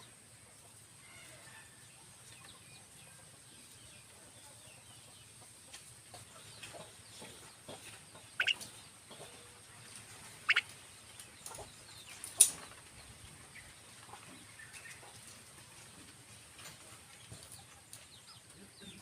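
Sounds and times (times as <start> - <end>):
faint chirps and ticks: 1.8 - 19.0
harsh bird calls: 8.2 - 8.7, 10.4 - 10.7.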